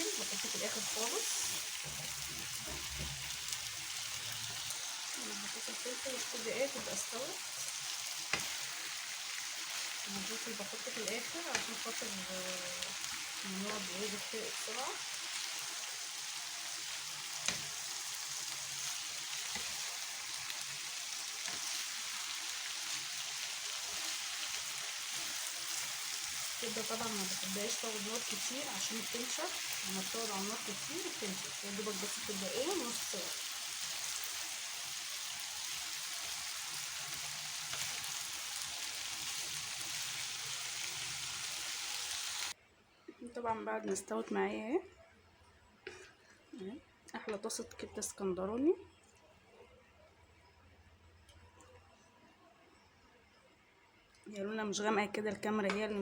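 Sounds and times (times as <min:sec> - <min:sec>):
food sizzling in a frying pan: 0:00.0 - 0:42.6.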